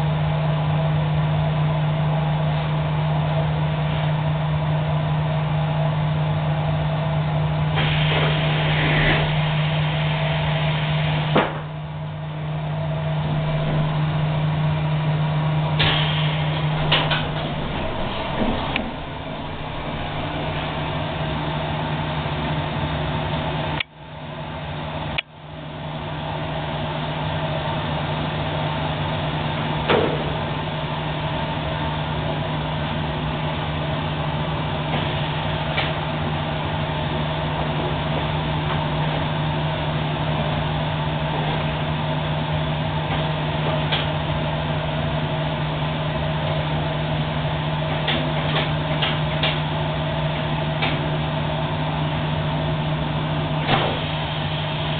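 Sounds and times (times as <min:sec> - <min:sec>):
welding machine humming: 0:02.3 - 0:25.2.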